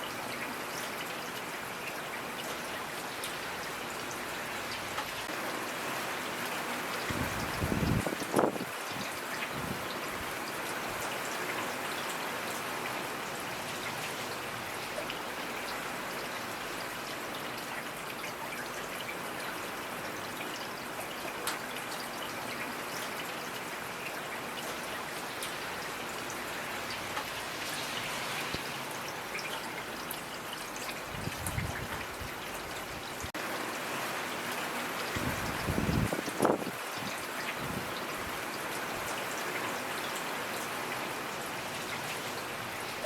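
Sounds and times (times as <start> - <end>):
raindrops ticking on a surface: 0.1 - 43.0
rain hissing: 25.3 - 30.2.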